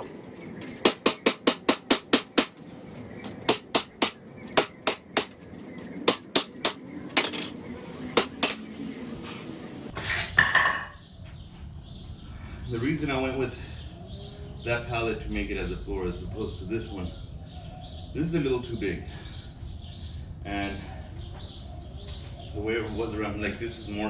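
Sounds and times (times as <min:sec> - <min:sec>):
hammer striking wood: 0:00.6 - 0:07.6, 0:08.2 - 0:08.7.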